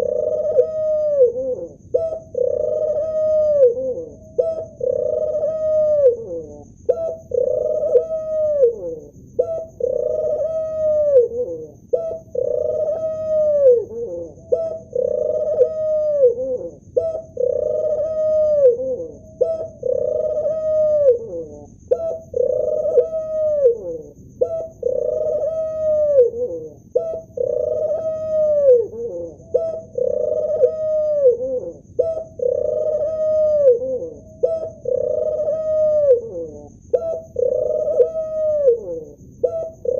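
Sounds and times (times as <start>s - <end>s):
dove cooing: 0.0s - 39.9s.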